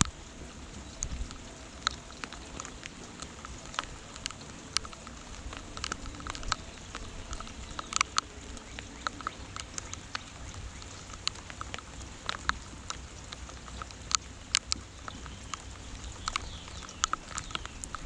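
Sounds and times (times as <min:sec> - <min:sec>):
raindrops striking a surface: 0:00.0 - 0:18.0
soft hiss of rainfall: 0:00.0 - 0:18.0.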